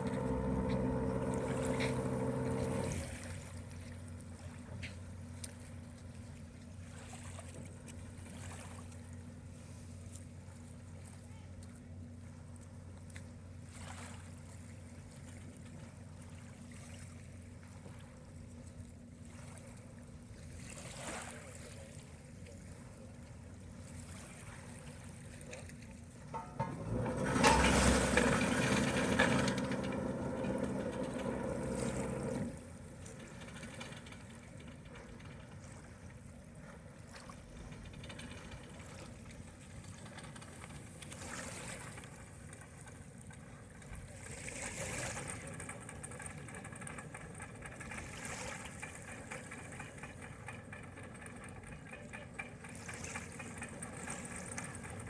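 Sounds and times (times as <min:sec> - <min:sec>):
loud humming burst: 0:00.0 - 0:03.3, 0:26.4 - 0:32.6
boat motor running: 0:00.0 - 0:08.0, 0:26.3 - 0:36.1, 0:36.8 - 0:55.0.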